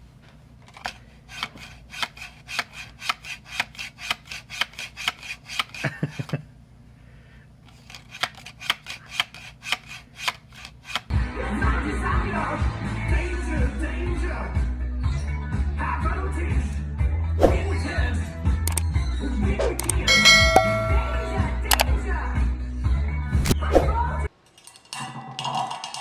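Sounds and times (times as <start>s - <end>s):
music: 11.1s - 24.3s.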